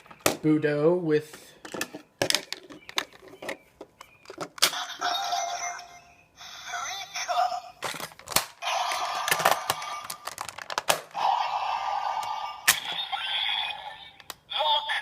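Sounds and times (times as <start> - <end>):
toy electronic sound effects: 4.6 - 7.8, 8.6 - 10.4, 11.1 - 15.0
sharp plastic clicks: 14.2 - 14.4.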